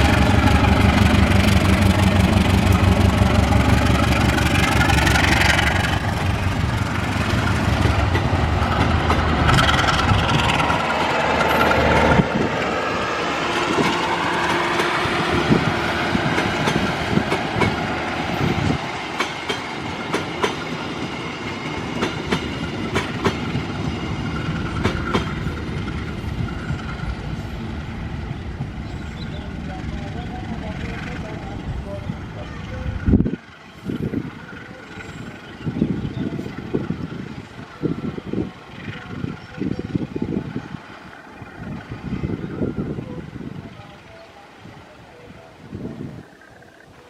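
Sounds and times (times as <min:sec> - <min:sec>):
train wheels clattering over rail joints: 0:00.0 - 0:27.3
diesel locomotive engine rumbling: 0:00.0 - 0:47.0.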